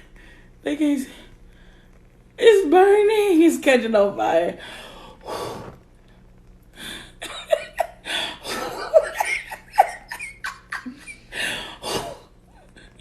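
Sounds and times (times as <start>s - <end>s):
breathy laughter: 6.9s - 13.0s.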